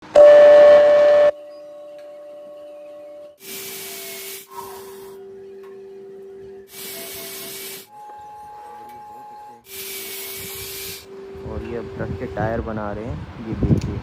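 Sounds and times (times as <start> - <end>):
grinder hissing into material: 3.4 - 5.1, 6.7 - 7.9, 9.7 - 11.1.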